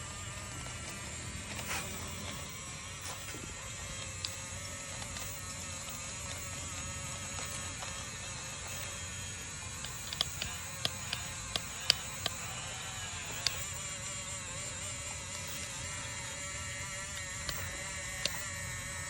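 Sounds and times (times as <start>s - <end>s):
small electric motor whirring: 0.0s - 19.0s
sharp clicks and knocks: 9.8s - 12.5s.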